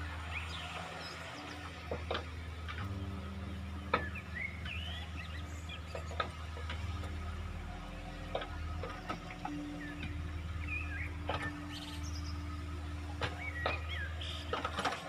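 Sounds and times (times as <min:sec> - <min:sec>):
excavator diesel engine running: 0:00.0 - 0:15.0
bird chirps: 0:03.9 - 0:06.3, 0:08.9 - 0:14.9.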